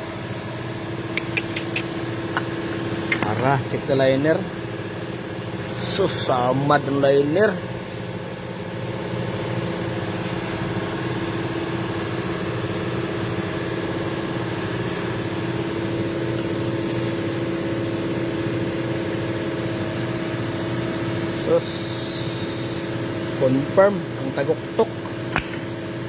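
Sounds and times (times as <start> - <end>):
engine idling: 0.1 - 23.6.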